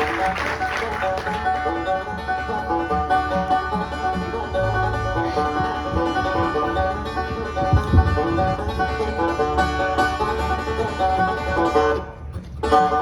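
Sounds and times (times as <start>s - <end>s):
banjo picking: 0.0s - 13.0s.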